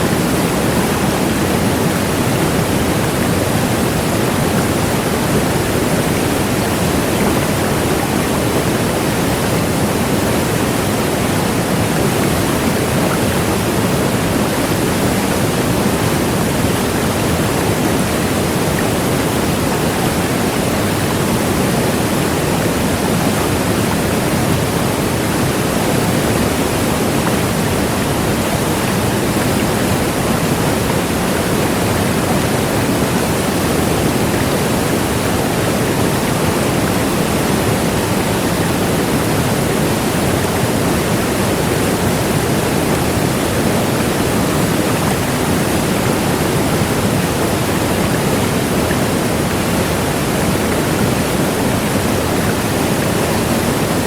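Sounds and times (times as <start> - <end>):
large waterfall rushing: 0.0 - 54.0.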